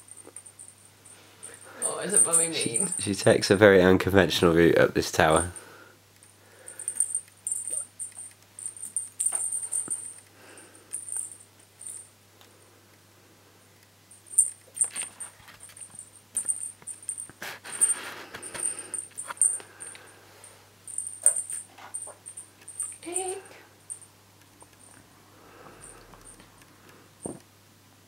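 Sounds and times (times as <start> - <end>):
high-pitched tinkle: 1.4 - 3.1.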